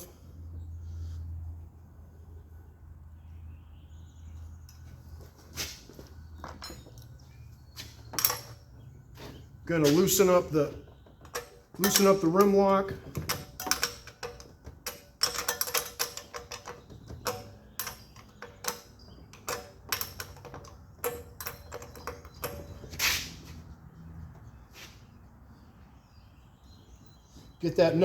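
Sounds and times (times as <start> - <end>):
wrench clicking on metal nut: 11.3 - 22.9.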